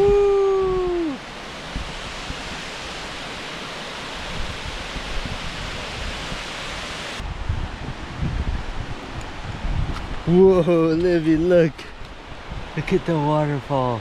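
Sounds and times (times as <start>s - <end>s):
waterfall rushing: 0.0s - 7.3s.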